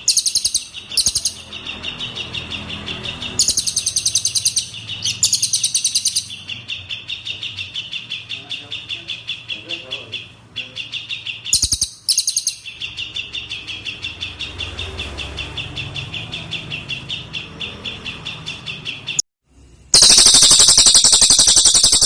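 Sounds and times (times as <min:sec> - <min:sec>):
bird chirping rapidly: 0:00.0 - 0:19.2, 0:19.9 - 0:22.0
bird trilling: 0:00.0 - 0:19.2, 0:20.0 - 0:22.0.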